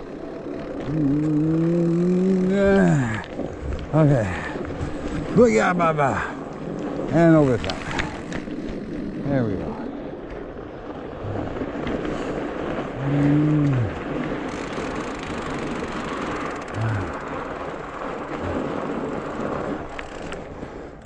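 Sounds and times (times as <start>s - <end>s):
bike tyres on snow and wind: 0.0s - 21.0s
low voice-like grunt: 0.8s - 3.3s, 13.0s - 14.0s, 16.7s - 17.2s.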